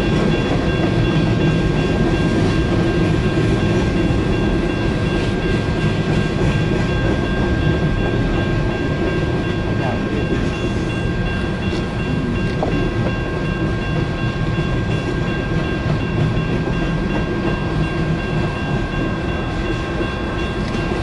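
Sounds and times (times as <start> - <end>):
freight train rumbling past: 0.0 - 21.0.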